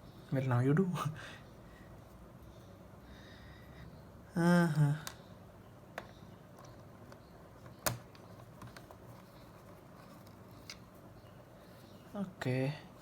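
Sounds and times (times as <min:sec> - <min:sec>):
light clicks handling laptop parts: 0:06.0 - 0:10.9.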